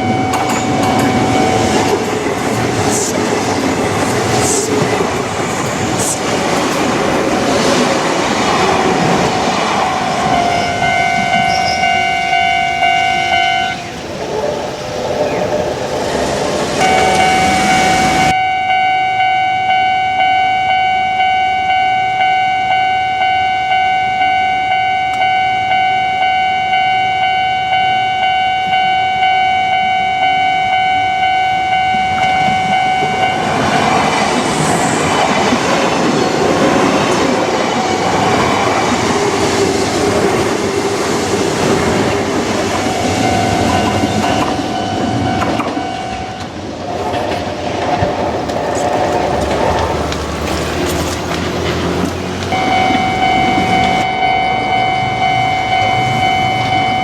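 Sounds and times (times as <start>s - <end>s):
level crossing warning bell: 0.0s - 6.9s, 10.1s - 14.1s, 16.8s - 39.3s, 41.6s - 46.6s, 52.5s - 57.0s
electric train passing: 0.0s - 57.0s.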